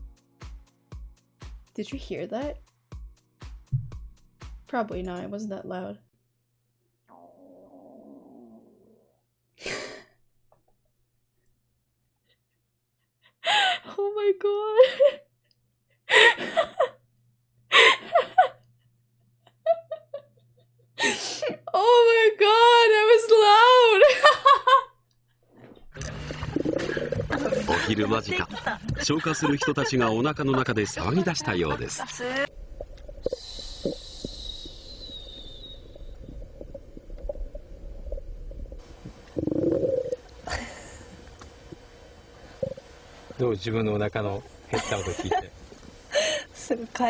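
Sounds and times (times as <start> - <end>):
stomach growling: 7.1 - 9.3, 25.6 - 27.7, 32.5 - 40.4
girl chuckling: 17.8 - 18.6.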